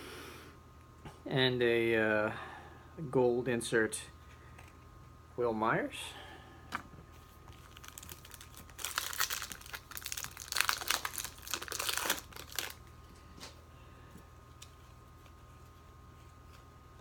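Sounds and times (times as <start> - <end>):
foil wrapper crinkling: 7.5 - 13.5.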